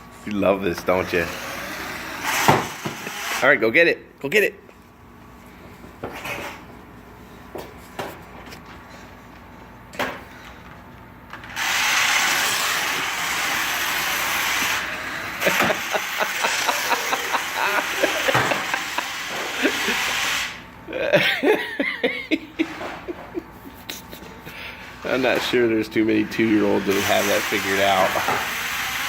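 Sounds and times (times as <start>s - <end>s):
toy car motor whirring: 1.0s - 3.4s, 11.6s - 20.6s, 26.4s - 29.0s.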